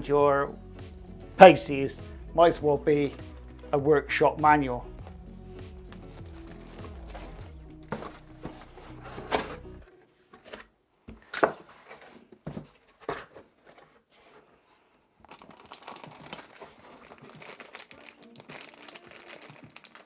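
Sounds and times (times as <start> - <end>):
background music: 0.0 - 10.0, 17.4 - 20.0
packaging crinkling and tearing: 6.2 - 9.6, 15.2 - 20.0.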